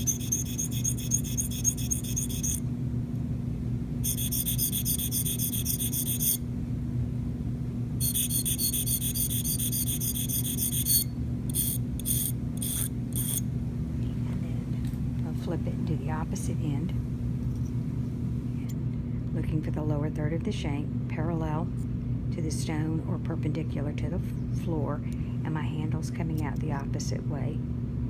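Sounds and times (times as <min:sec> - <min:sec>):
sharpening stone scraping metal: 0:00.0 - 0:02.6, 0:04.0 - 0:06.4, 0:08.0 - 0:13.4.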